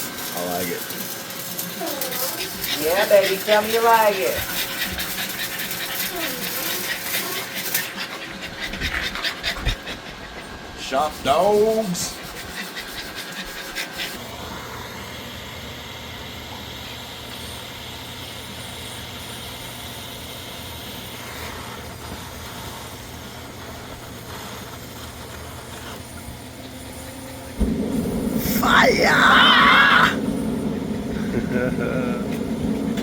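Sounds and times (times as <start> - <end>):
machine hum with hissing rush: 23.3 - 33.0.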